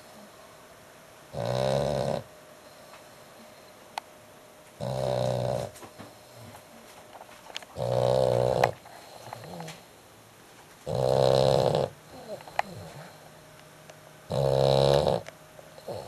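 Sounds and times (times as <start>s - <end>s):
dog snoring loudly: 1.3s - 2.3s, 4.8s - 6.5s, 7.8s - 9.8s, 10.8s - 13.2s, 14.3s - 16.0s.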